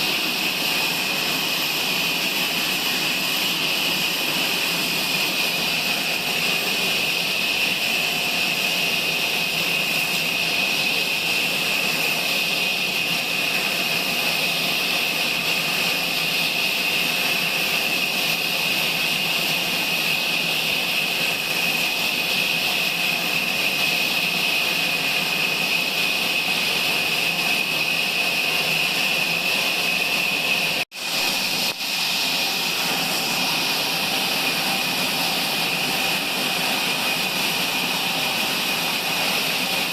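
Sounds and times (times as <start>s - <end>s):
sawmill machine whining: 0.0s - 39.9s.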